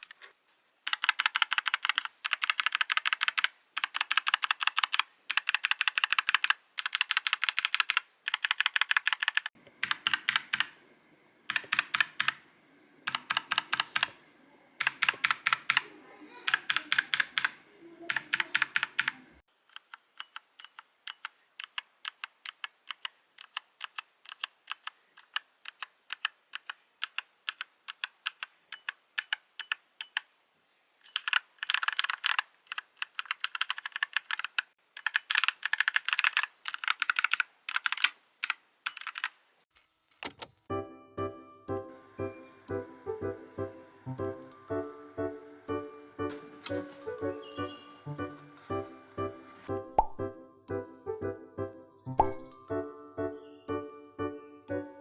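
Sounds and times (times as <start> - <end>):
mechanical keyboard keystrokes clacking: 0.9 - 10.8, 11.5 - 12.4, 13.1 - 14.2, 14.8 - 15.9, 16.5 - 30.2, 31.1 - 39.3.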